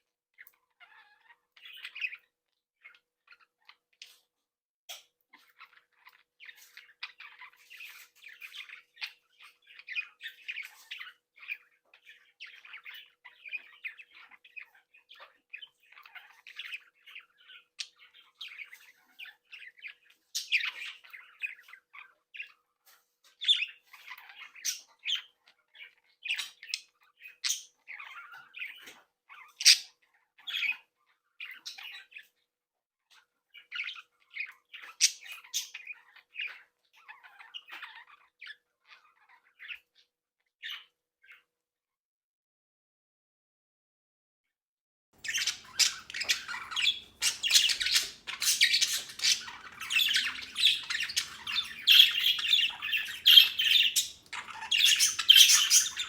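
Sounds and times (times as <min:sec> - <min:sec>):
budgerigars chattering and chirping: 0:00.4 - 0:04.2, 0:05.3 - 0:32.4, 0:33.1 - 0:41.4, 0:45.2 - 0:56.0
budgerigar squawks: 0:45.2 - 0:56.0.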